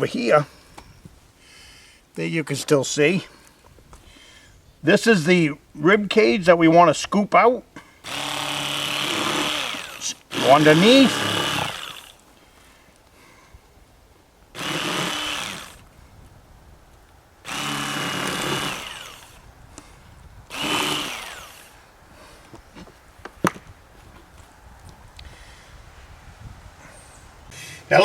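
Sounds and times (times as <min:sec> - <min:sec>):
electric knife motor whining: 0:08.0 - 0:12.2, 0:14.6 - 0:15.8, 0:17.4 - 0:19.4, 0:20.5 - 0:21.8.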